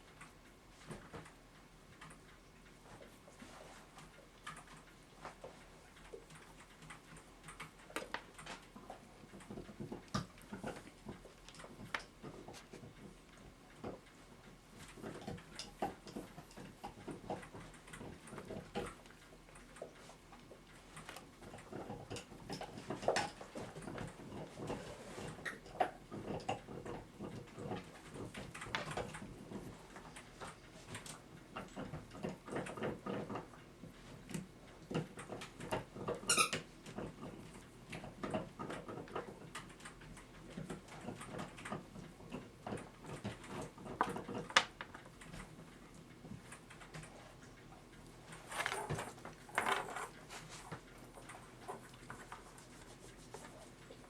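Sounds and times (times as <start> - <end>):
small squeaks and rubbing: 36.1 - 36.7.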